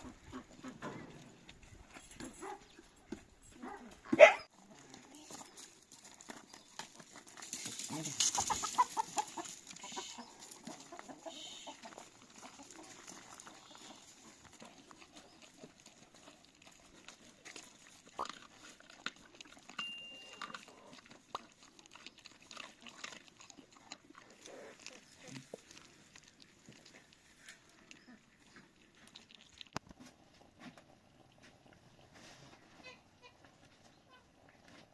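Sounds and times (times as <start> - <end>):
chickens clucking: 0.0 - 1.6, 8.2 - 15.7.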